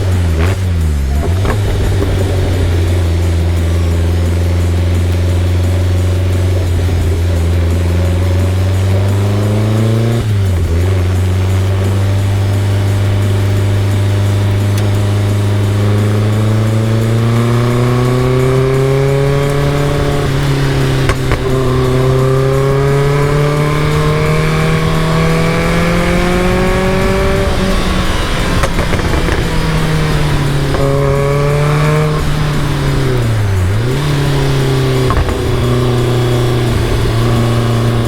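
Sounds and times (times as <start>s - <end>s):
car engine accelerating: 0.0s - 38.0s.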